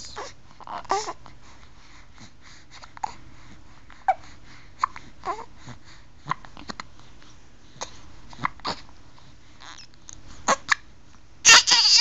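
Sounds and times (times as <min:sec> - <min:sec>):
person hiccuping: 0:11.5 - 0:12.0.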